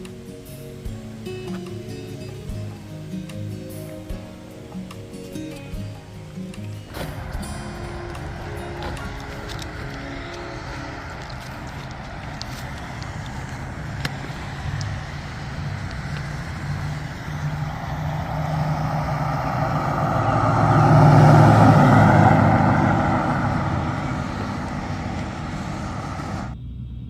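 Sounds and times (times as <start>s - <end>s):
road vehicle passing: 0.0s - 26.6s.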